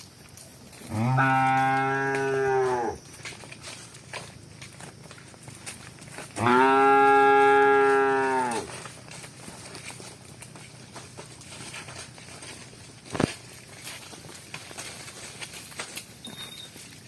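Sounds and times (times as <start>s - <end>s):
cow mooing: 0.9s - 3.0s, 6.4s - 8.7s.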